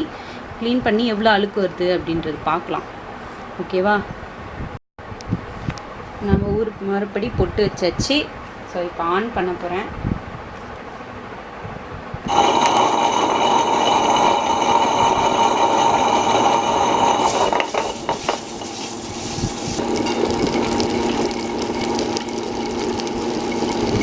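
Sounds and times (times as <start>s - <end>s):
wet grinder motor whining: 12.3s - 18.1s, 19.8s - 24.0s
stone rollers grinding rice: 12.3s - 24.0s.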